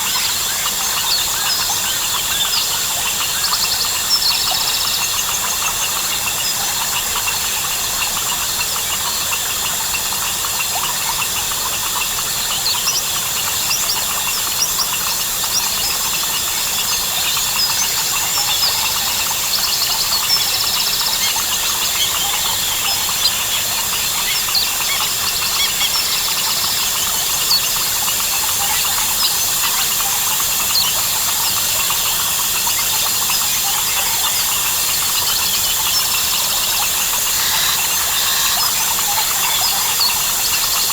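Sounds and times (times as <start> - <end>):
frog calls: 0.0 - 40.9
insects droning: 0.0 - 40.9
bird calls: 32.7 - 40.9.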